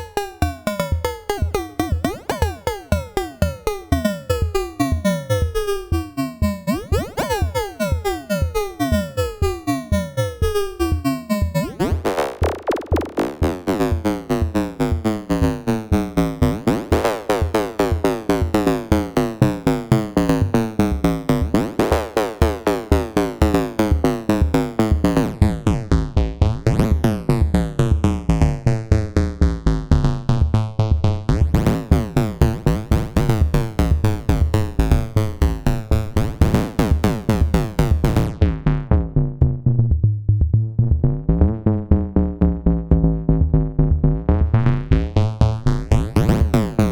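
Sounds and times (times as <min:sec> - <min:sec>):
fast repeating synth pattern: 0:00.0 - 0:25.6, 0:45.0 - 0:46.9.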